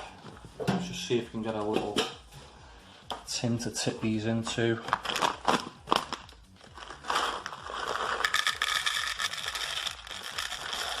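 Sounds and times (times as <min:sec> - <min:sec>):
coffee beans rattling into tin: 0:06.7 - 0:11.0.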